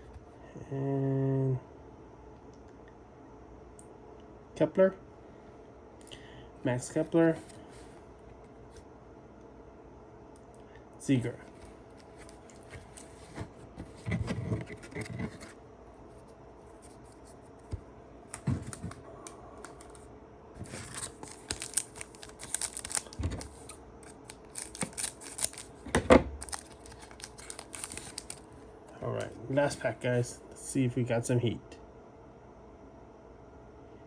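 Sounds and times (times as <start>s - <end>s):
cards and wrapper rustling: 11.5s - 15.6s, 19.6s - 29.8s.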